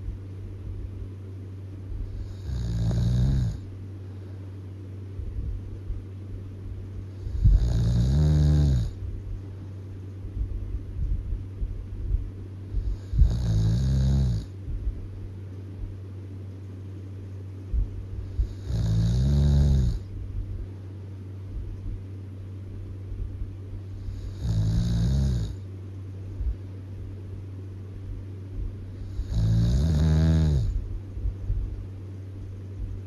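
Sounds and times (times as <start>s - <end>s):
steady low hum: 0.0s - 33.0s
person snoring loudly: 2.1s - 3.6s, 7.2s - 9.0s, 12.8s - 14.5s, 18.4s - 20.0s, 24.0s - 25.6s, 29.0s - 30.8s.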